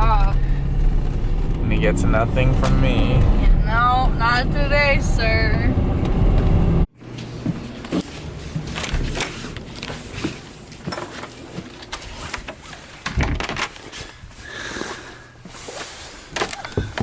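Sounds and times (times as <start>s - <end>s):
car engine and road rumble: 0.0s - 6.9s.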